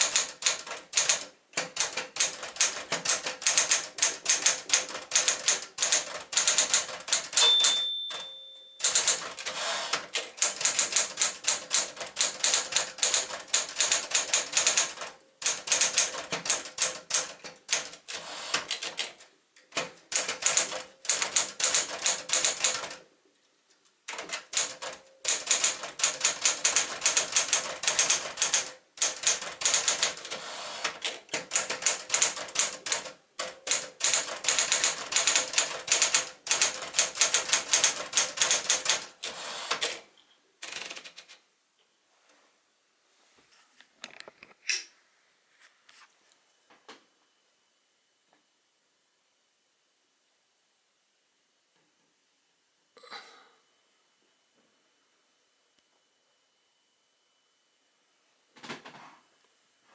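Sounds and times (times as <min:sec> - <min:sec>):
typewriter keys striking: 0:00.0 - 0:23.0, 0:24.1 - 0:40.0, 0:40.6 - 0:41.4
typewriter bell ringing: 0:07.3 - 0:09.6.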